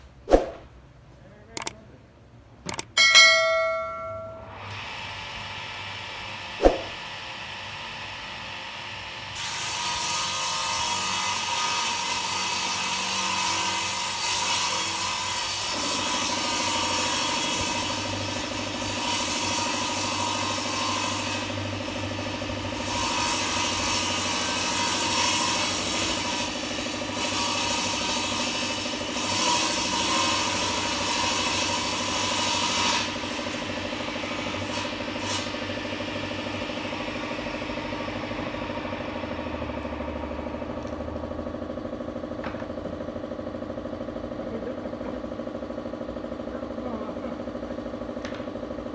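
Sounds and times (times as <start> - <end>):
sharp click: 1.5 - 1.8, 2.7 - 3.2
table saw motor hum: 3.8 - 48.9.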